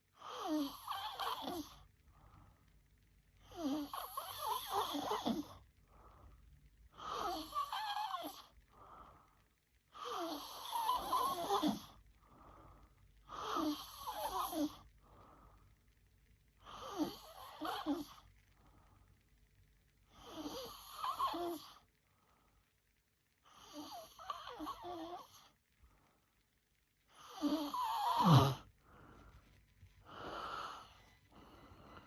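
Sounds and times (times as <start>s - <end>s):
woman snoring: 0.2s - 1.8s, 3.4s - 5.6s, 6.9s - 8.5s, 9.9s - 12.0s, 13.3s - 14.8s, 16.6s - 18.2s, 20.1s - 21.8s, 23.5s - 25.5s, 27.1s - 28.7s
soft breath: 5.6s - 7.3s, 8.5s - 9.8s, 12.0s - 13.7s, 14.8s - 16.7s, 25.5s - 32.0s.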